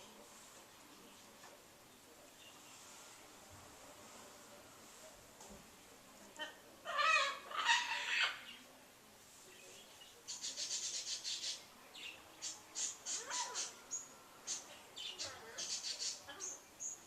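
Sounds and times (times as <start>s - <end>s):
caged bird crying: 6.9s - 8.6s, 12.8s - 16.6s.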